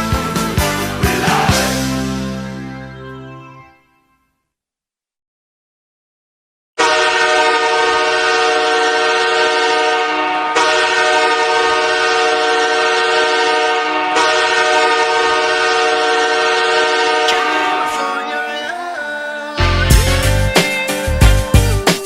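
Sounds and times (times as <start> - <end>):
hockey goal horn: 6.8 - 18.5.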